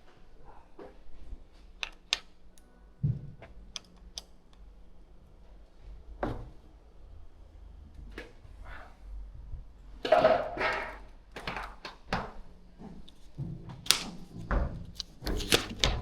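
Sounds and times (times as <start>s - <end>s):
clicks and knocks of tools: 1.8s - 2.7s.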